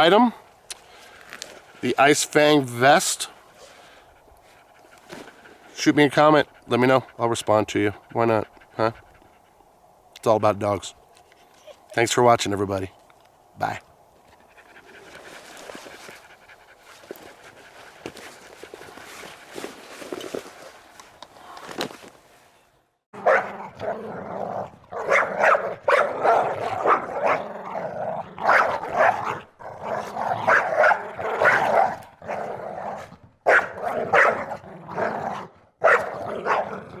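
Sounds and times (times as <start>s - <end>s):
dog panting: 0.4s - 12.0s, 14.2s - 21.0s
dog barking and growling: 3.2s - 9.6s, 23.2s - 37.0s.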